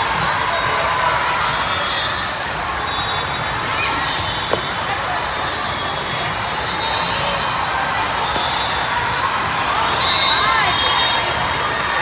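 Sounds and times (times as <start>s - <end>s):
shoe squeaks: 1.4s - 11.3s.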